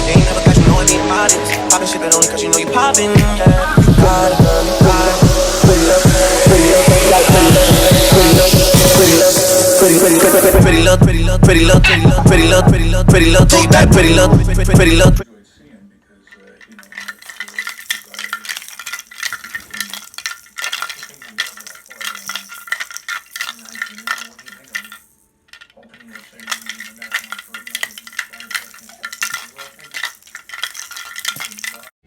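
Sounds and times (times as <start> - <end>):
kitchen utensils clattering: 16.4 - 32.0.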